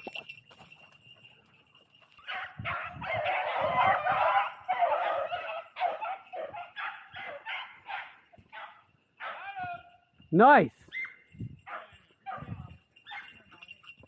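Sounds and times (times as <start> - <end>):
dogs baying: 2.1 - 10.0, 10.9 - 13.7.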